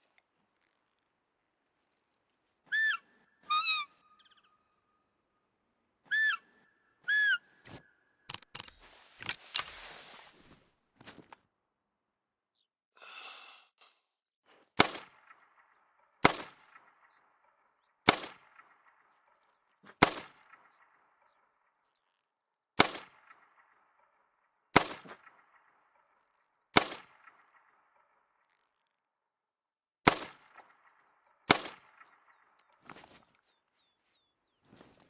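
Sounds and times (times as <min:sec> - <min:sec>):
rifle shots with echo: 0:14.8 - 0:17.2, 0:18.1 - 0:19.1, 0:20.0 - 0:20.9, 0:22.8 - 0:23.9, 0:24.8 - 0:26.2, 0:26.8 - 0:28.1, 0:30.0 - 0:32.5.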